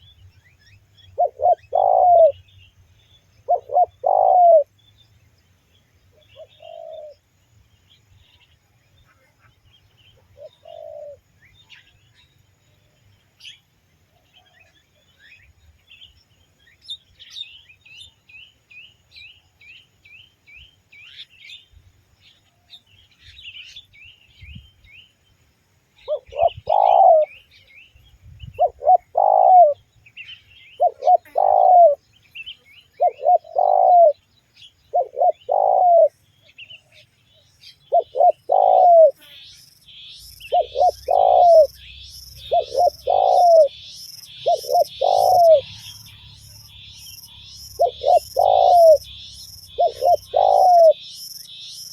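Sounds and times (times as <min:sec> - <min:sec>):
small birds chirping: 0:00.0 - 0:51.9
dove cooing: 0:01.0 - 0:02.4, 0:03.5 - 0:04.7, 0:06.4 - 0:07.2, 0:10.3 - 0:11.2, 0:26.1 - 0:27.4, 0:28.6 - 0:29.8, 0:30.8 - 0:32.0, 0:33.0 - 0:34.2, 0:34.9 - 0:36.2, 0:37.9 - 0:39.3, 0:40.4 - 0:51.3.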